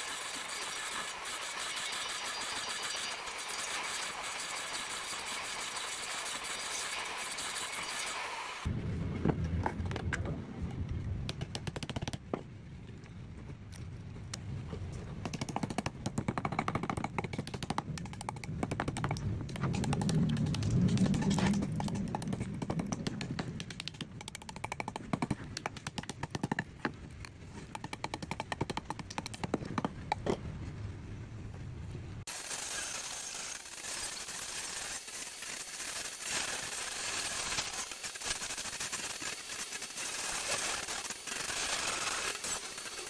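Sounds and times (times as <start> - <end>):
low rumble: 8.7 - 11.4, 18.4 - 23.9.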